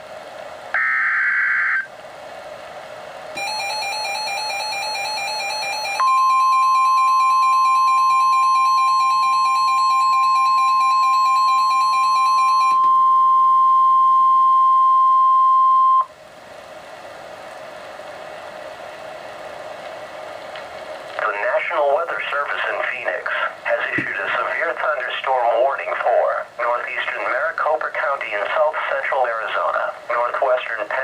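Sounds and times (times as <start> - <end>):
steady warning alarm tone: 0.7 - 1.9, 3.4 - 16.1
faint radio hiss: 12.8 - 31.0.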